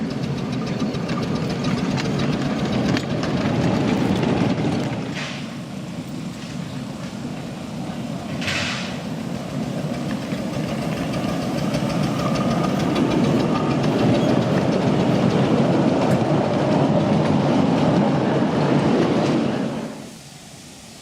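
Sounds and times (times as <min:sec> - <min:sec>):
miniature train running on track: 0:00.0 - 0:05.3, 0:05.9 - 0:19.9.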